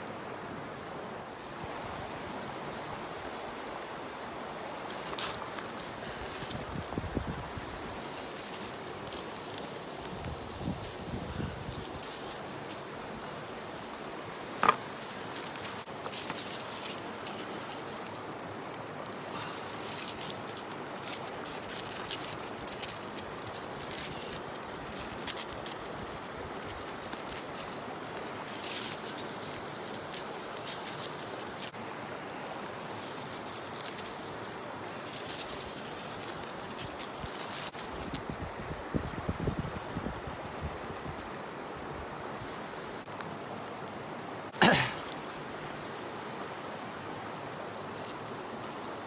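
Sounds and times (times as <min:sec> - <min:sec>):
light clicks and crackles: 0:04.8 - 0:12.8, 0:14.6 - 0:38.3, 0:44.8 - 0:45.5, 0:47.6 - 0:49.0
river water rushing: 0:11.8 - 0:38.0.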